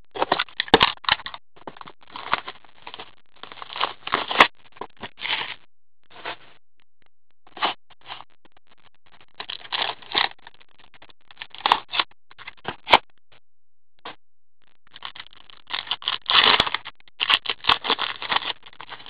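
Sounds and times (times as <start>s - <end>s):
wrapper and cards rustling: 15.1s - 19.0s.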